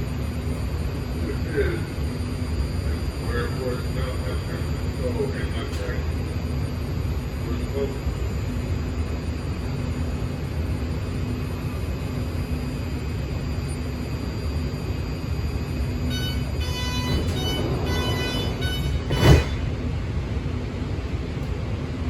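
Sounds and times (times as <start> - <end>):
train car low hum: 0.0 - 22.0
train door chime: 16.1 - 19.7
loud thump: 17.0 - 19.7.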